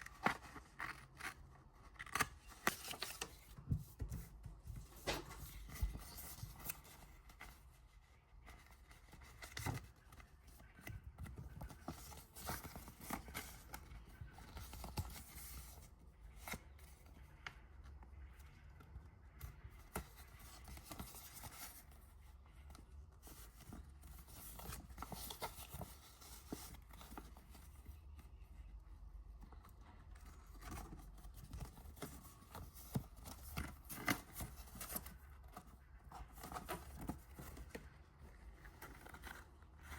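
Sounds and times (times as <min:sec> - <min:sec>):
paper rustling: 0:00.0 - 0:17.2.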